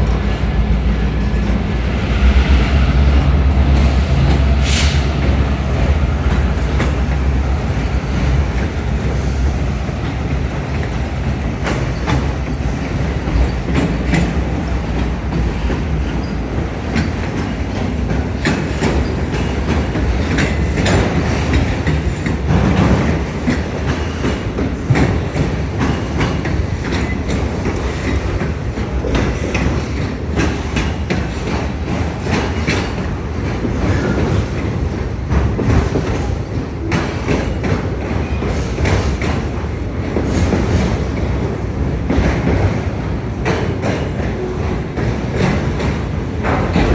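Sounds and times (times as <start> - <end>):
train wheels rumbling on rails: 0.0 - 46.9
wheels clicking over rail joints: 9.8 - 46.9.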